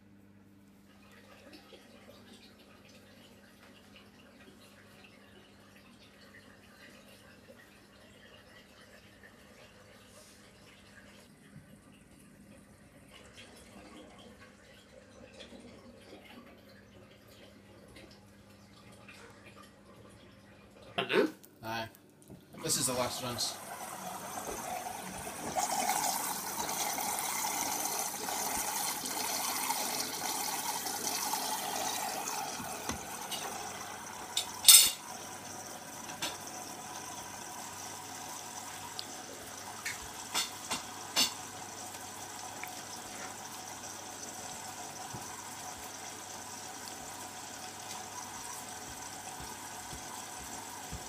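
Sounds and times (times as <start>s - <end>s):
washing machine low running sound: 0.0s - 51.0s
water running into washing machine drum: 22.6s - 51.0s.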